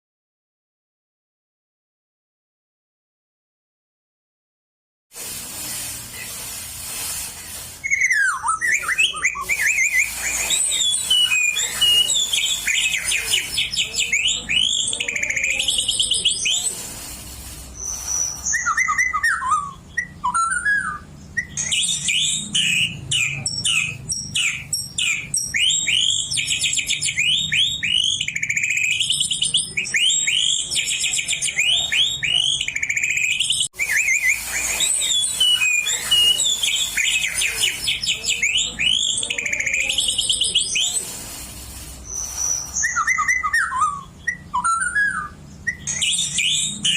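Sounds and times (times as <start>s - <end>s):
bird singing whistles and trills: 7.8s - 16.9s, 17.7s - 41.3s, 42.0s - 46.9s.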